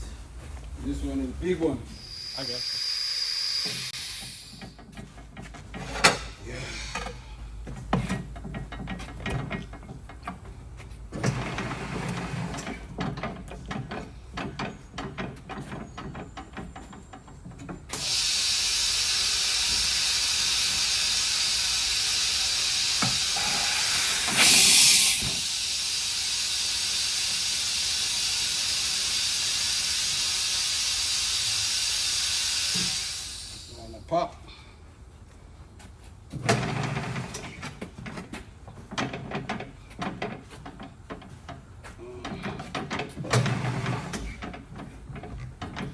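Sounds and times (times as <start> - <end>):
compressed air hissing: 1.9 - 4.8, 18.0 - 33.8
tire changer clanks and clicks: 4.5 - 18.2, 36.3 - 45.9
air blast: 23.2 - 25.8.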